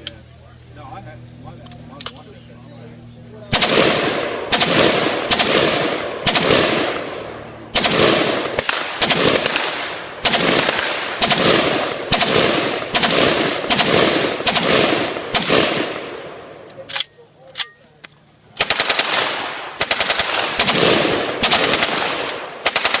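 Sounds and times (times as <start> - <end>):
loud rifle shots with echo: 3.5 - 16.3, 18.6 - 23.0.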